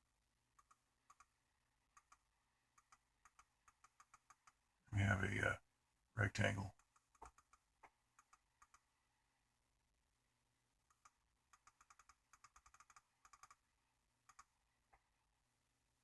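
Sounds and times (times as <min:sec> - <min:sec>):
computer keyboard clicking: 0:02.8 - 0:04.6, 0:10.9 - 0:13.6.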